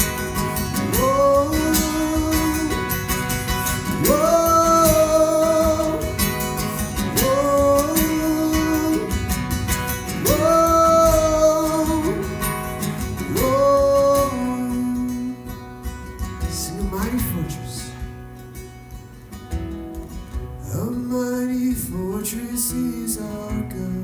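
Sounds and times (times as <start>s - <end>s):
voices singing wordless refrain: 0.0s - 15.4s
acoustic guitar playing: 0.0s - 24.0s.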